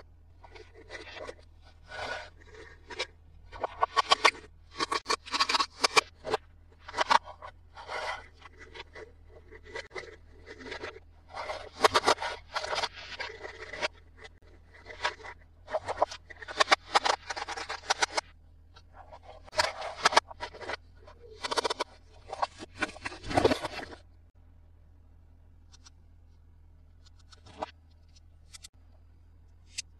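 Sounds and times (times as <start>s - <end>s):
low steady hum: 0.0s - 29.9s.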